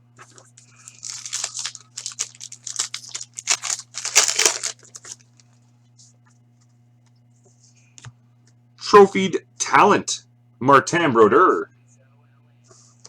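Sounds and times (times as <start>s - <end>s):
low electrical hum: 0.0s - 13.0s
wrapper tearing and crinkling: 0.6s - 5.4s.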